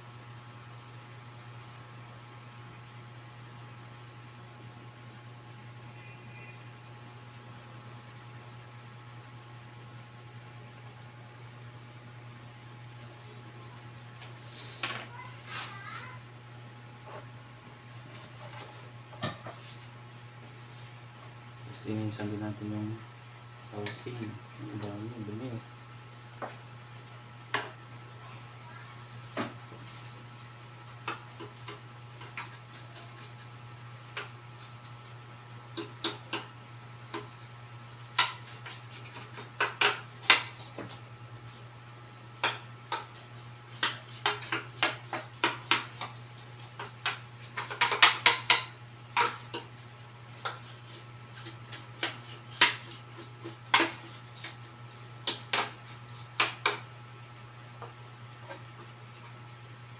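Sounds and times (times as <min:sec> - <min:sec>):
steady low hum: 0:00.0 - 0:59.9
hand tools clicking and scraping: 0:42.4 - 0:49.7, 0:50.4 - 0:56.8.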